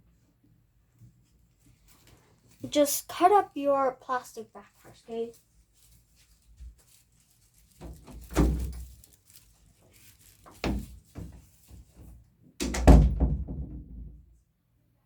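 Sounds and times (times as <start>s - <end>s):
dull thuds and knocks: 10.5s - 14.3s.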